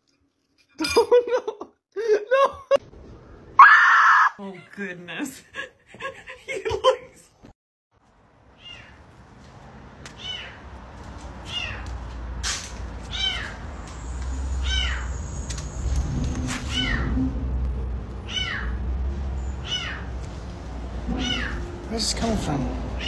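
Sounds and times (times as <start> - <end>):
kitten meowing: 10.2 - 10.6, 14.6 - 15.1, 18.3 - 18.8, 21.2 - 21.6.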